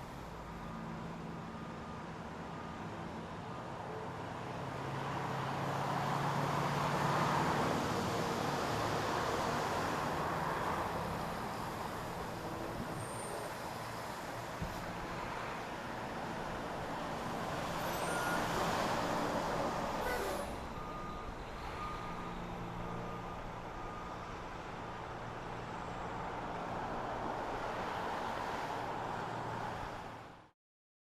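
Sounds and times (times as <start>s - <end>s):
heavy vehicle engines running: 0.0s - 30.4s
traffic and machinery noise: 0.0s - 30.5s
reversing alarm beeping: 17.8s - 24.3s.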